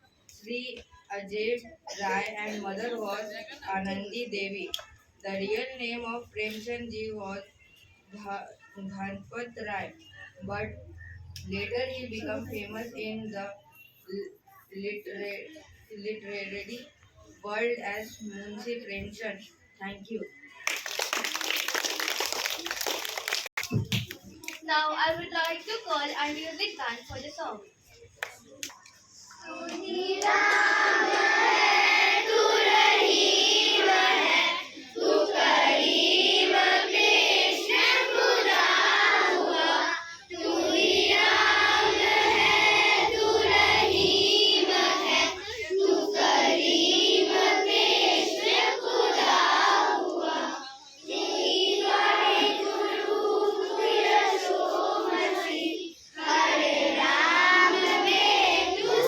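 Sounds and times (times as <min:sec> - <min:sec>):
children singing together: 0:29.4 - 0:59.0.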